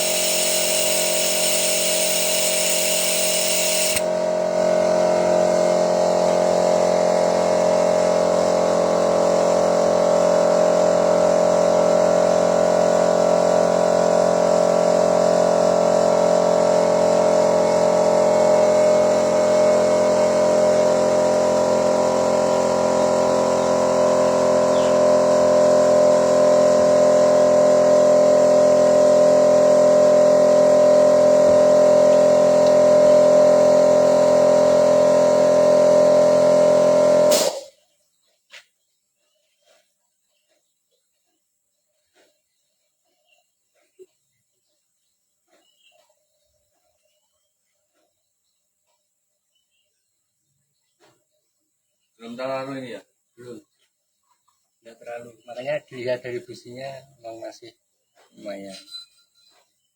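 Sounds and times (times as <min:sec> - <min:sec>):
car engine running: 0:00.0 - 0:04.1.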